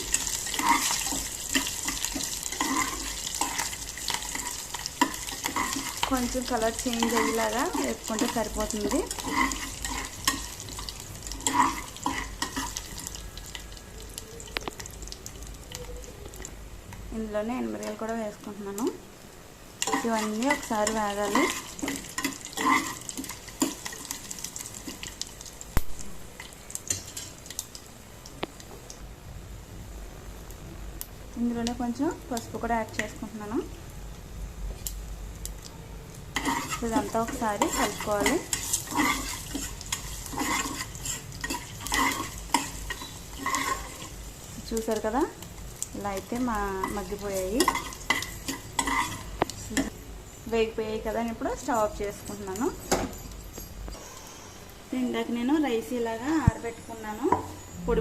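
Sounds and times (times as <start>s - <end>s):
spoon scraping a pan: 0.0s - 13.6s, 19.8s - 25.2s, 26.4s - 27.5s, 36.3s - 45.6s, 46.4s - 50.0s
spices sizzling in hot oil: 0.0s - 58.0s.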